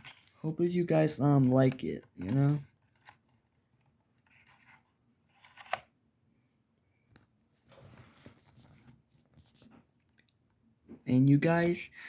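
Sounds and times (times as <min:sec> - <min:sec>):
handling rubbing and rustling: 0:00.0 - 0:05.9, 0:07.2 - 0:10.2.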